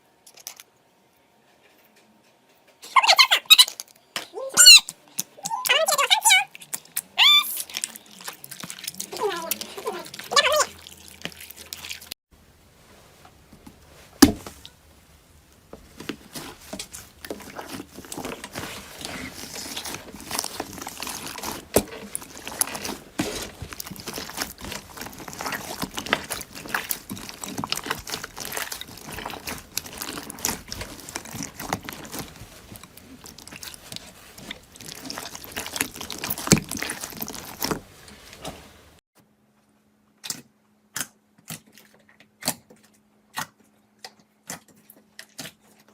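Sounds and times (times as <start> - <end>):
wet slime squelches: 2.9 - 12.2, 13.6 - 39.0.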